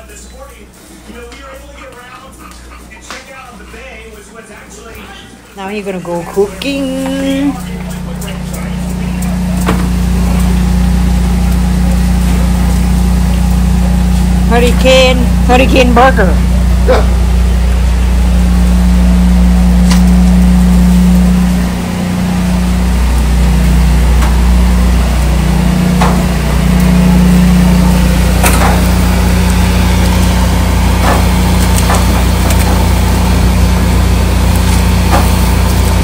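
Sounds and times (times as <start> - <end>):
engine humming: 1.4 - 36.0.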